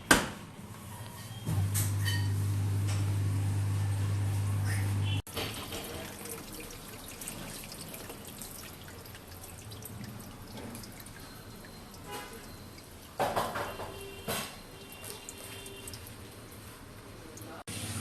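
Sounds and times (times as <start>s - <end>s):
water dripping and splashing: 5.2s - 17.6s.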